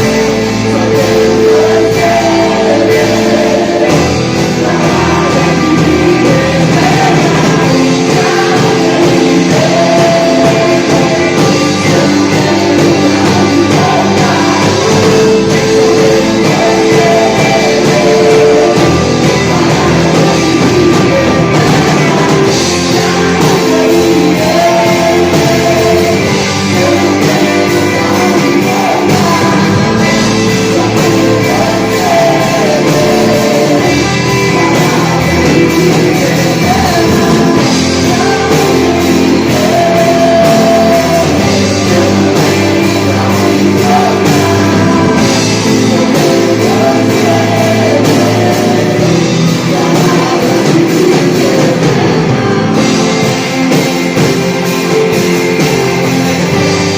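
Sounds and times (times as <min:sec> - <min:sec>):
people singing: 0:00.0 - 0:56.9
rock gospel band playing: 0:00.0 - 0:56.9.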